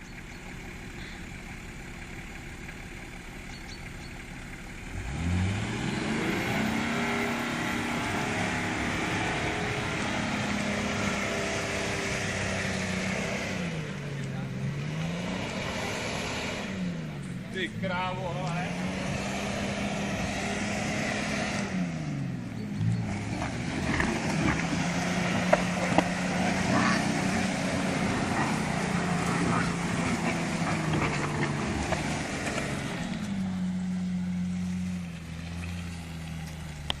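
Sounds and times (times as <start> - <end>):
off-road vehicle engine driving: 0.0 - 37.0.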